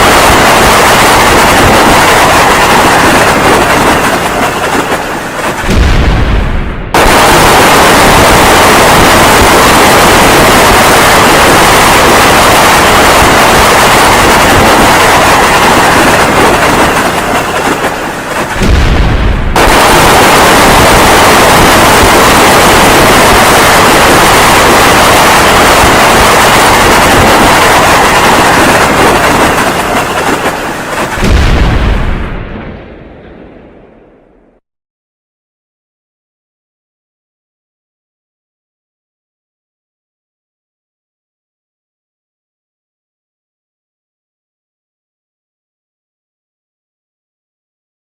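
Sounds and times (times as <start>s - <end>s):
low rumble: 5.6s - 7.6s, 18.6s - 19.9s, 31.2s - 34.6s
explosion blast: 5.6s - 17.6s, 18.4s - 30.3s, 31.2s - 34.6s.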